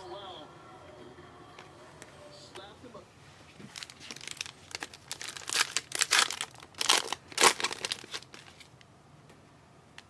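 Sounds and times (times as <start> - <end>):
wrapper crinkling and tearing: 3.6 - 8.8.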